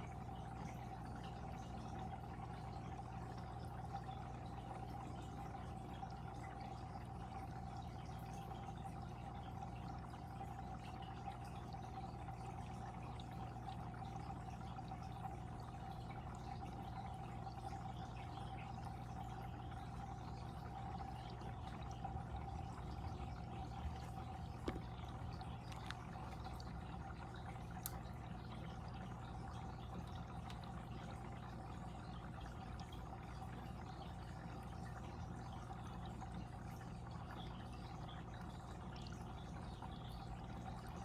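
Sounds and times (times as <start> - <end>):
water trickling in fish tank: 0.0 - 41.0.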